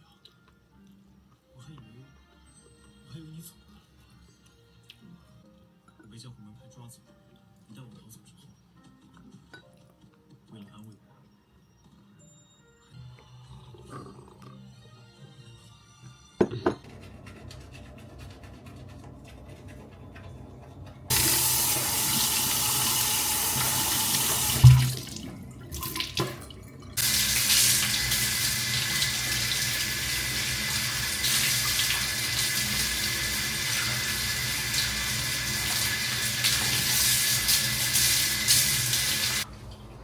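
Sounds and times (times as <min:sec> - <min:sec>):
water tap running into sink: 0:19.6 - 0:40.0.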